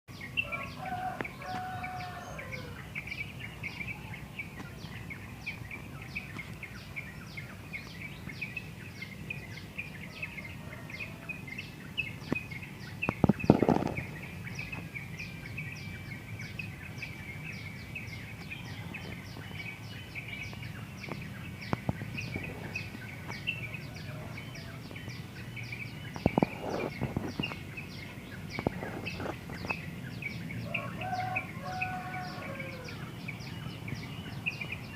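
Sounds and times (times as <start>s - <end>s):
small birds chirping: 0.1s - 34.9s.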